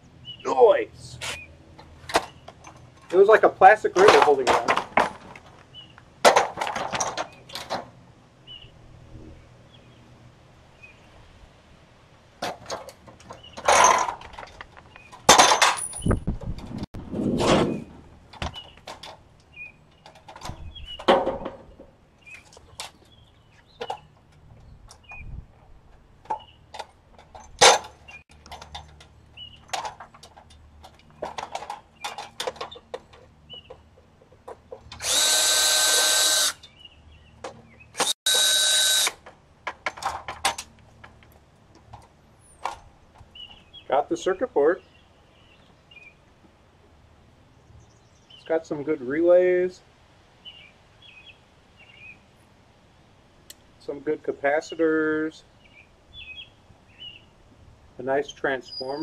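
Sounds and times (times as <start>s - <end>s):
dishwasher parts clattering: 12.4s - 16.2s.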